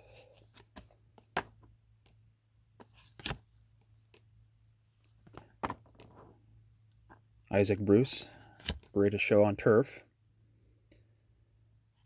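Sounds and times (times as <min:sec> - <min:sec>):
trading cards flipped through: 0:00.3 - 0:02.2, 0:02.8 - 0:04.3, 0:05.0 - 0:06.3, 0:08.4 - 0:09.0.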